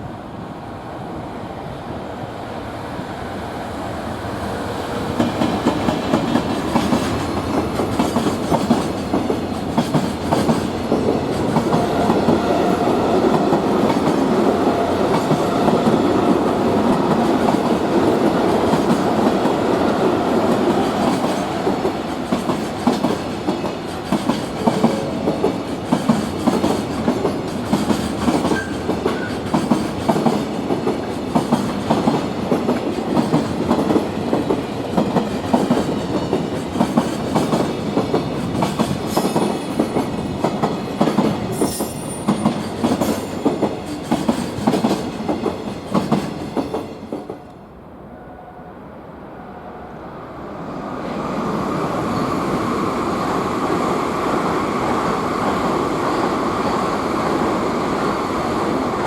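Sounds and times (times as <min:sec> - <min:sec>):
train wheels clacking over rail joints: 0:05.2 - 0:12.4, 0:20.5 - 0:47.5.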